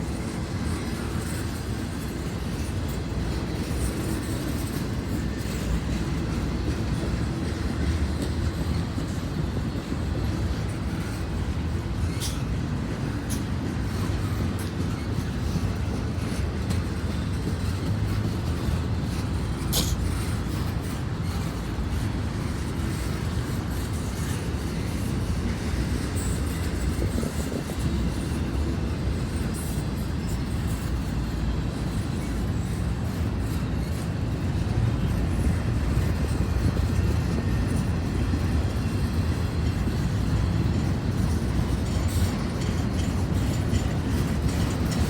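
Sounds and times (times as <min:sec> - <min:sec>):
train wheels rumbling on rail: 0:00.0 - 0:45.0.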